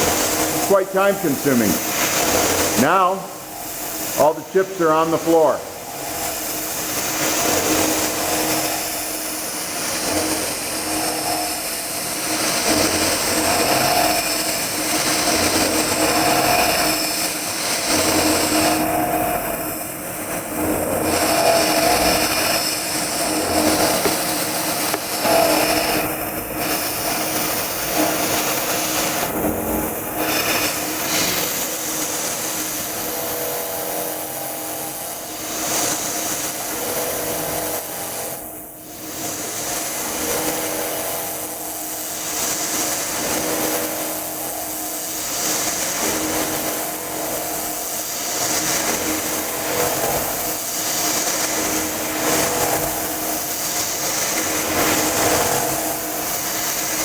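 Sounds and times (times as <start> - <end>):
mill cutting steel: 21.0 - 29.4.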